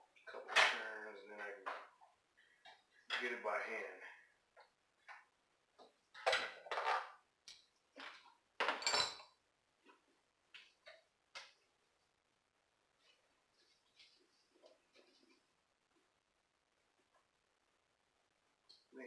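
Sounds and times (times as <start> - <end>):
metal tools clinking on bolt: 8.6 - 9.3.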